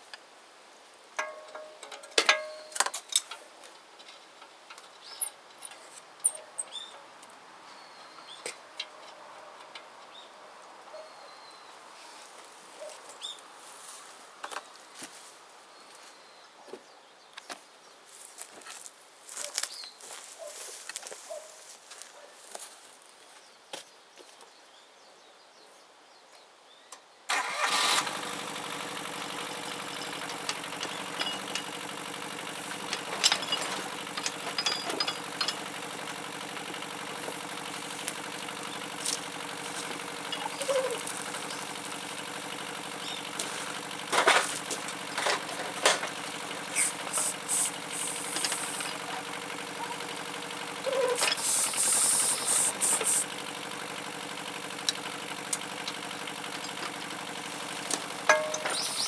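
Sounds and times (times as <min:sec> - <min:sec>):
metallic clanks and knocks: 0:01.2 - 0:03.0, 0:29.6 - 0:47.4, 0:57.9 - 0:59.0
diesel engine running: 0:27.3 - 0:59.0.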